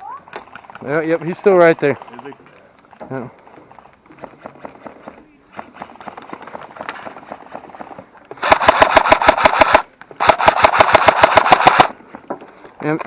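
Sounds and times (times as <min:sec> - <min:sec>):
airsoft rifle full-auto bursts: 0:08.4 - 0:12.0.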